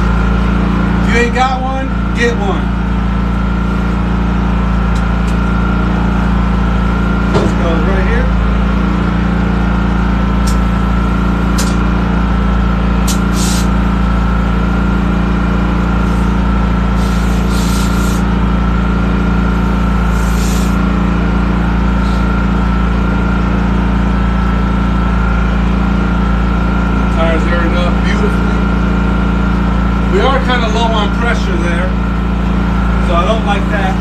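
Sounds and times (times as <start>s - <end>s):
engine drone: 0.0s - 34.0s
compressed air hissing: 11.5s - 11.8s, 13.0s - 13.8s, 16.0s - 18.4s, 19.5s - 21.0s, 21.9s - 22.4s.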